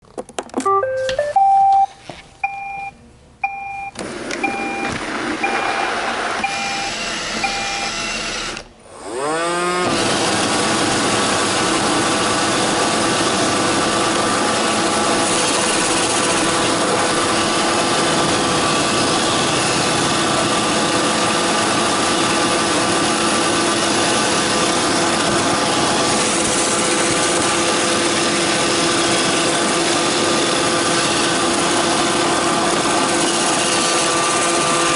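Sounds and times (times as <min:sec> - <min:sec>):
short beeps: 0:00.7 - 0:05.8, 0:06.4 - 0:07.9
robot vacuum motors whining: 0:04.0 - 0:12.2
robot vacuum electronic tune: 0:04.4 - 0:08.2.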